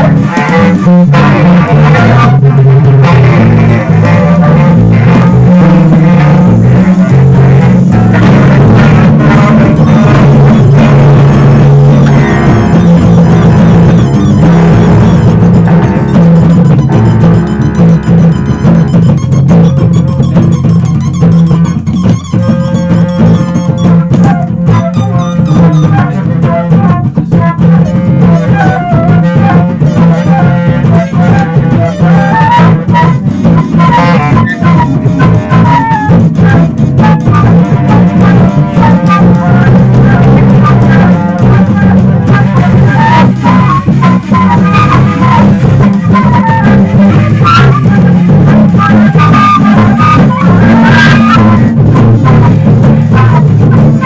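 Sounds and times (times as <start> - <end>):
drums and percussion: 0.0 - 54.0
instrumental music: 0.0 - 54.0
low bass line: 0.0 - 54.0
melody line: 6.5 - 26.0.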